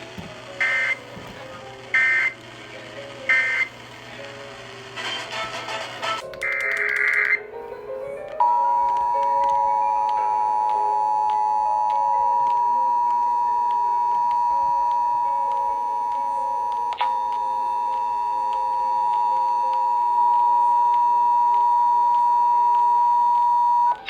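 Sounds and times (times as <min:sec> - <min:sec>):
two-tone alert signal: 0:00.6 - 0:01.0, 0:02.0 - 0:02.4, 0:03.3 - 0:03.7, 0:08.4 - 0:24.0.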